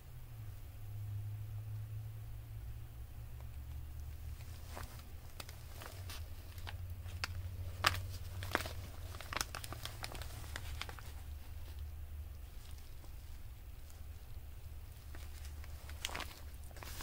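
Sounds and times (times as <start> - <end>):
steady low hum: 0.0 - 17.0
paper crinkling and rustling: 4.2 - 17.0.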